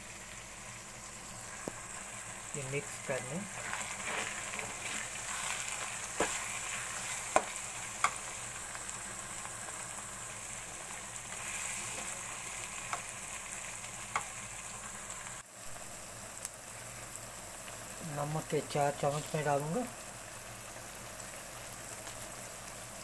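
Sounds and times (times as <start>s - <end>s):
food sizzling in hot oil: 0.0s - 23.0s
spoon knocking against pan: 7.3s - 8.2s.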